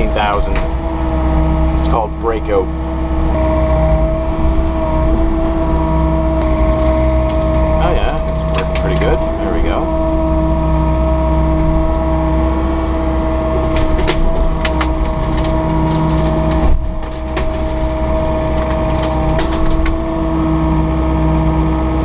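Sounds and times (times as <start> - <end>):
excavator diesel engine running: 0.0 - 22.0
sharp cracks and snaps: 13.7 - 20.2.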